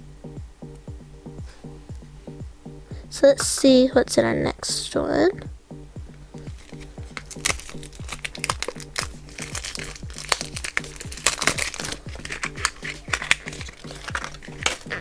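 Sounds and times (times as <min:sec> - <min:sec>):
background music: 0:00.0 - 0:15.0
plastic packaging crinkling: 0:06.4 - 0:15.0.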